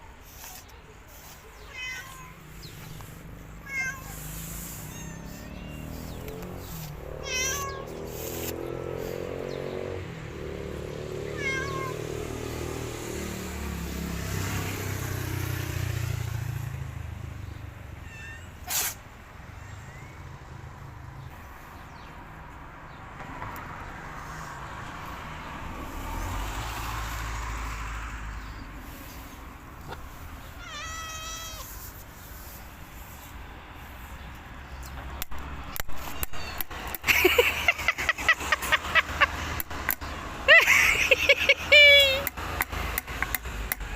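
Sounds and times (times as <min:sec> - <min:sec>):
cats meowing: 0:01.3 - 0:08.6, 0:11.2 - 0:12.2, 0:17.9 - 0:18.7, 0:29.8 - 0:32.0.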